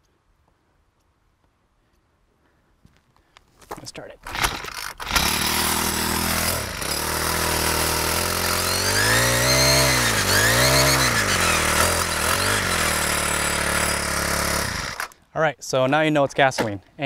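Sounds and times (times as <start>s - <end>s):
string trimmer engine revving: 4.2s - 15.2s.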